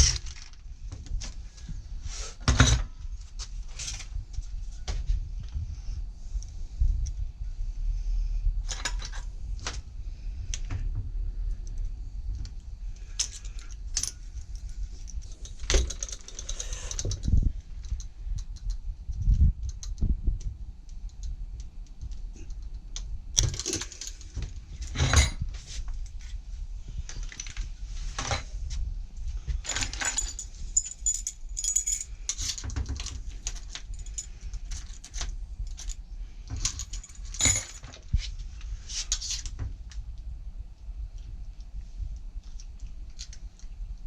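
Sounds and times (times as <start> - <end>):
small metal parts clinking: 13.0 - 18.7, 29.6 - 36.0, 36.6 - 37.9.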